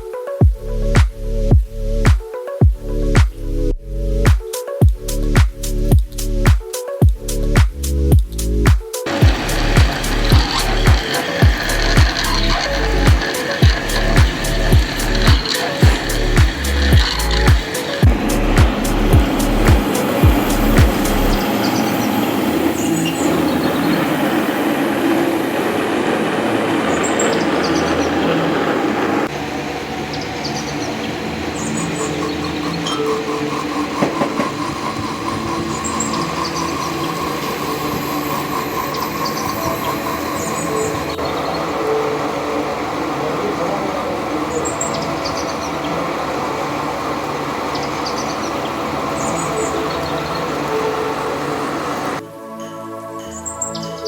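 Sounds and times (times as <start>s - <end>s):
metal lathe cutting steel: 9.0s - 52.2s
faint high chirps: 30.1s - 43.6s.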